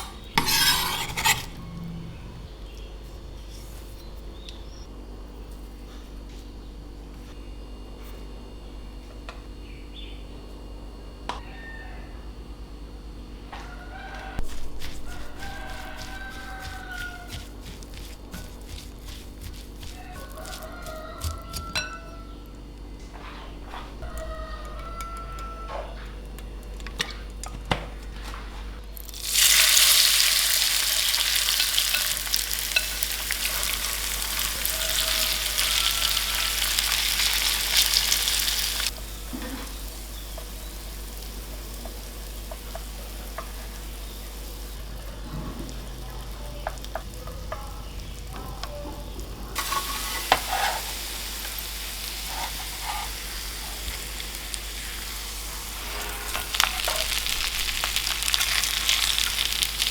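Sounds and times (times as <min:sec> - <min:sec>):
food sizzling in hot oil: 0:29.0 - 0:48.4, 0:49.1 - 0:59.9.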